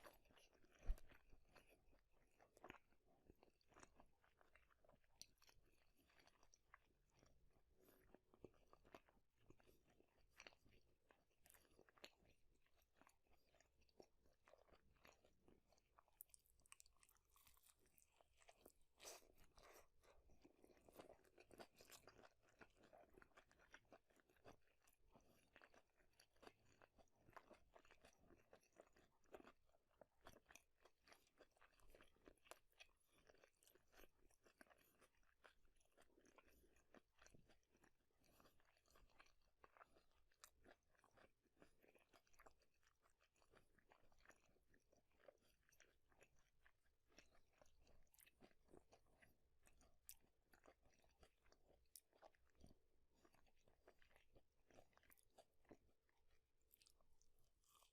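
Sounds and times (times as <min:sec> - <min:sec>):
crunchy chewing of food: 0:00.0 - 0:57.9.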